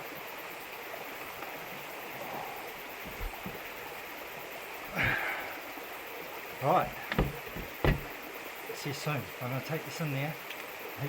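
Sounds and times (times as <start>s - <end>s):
running water rushing: 0.8s - 10.0s
thump: 6.8s - 8.1s.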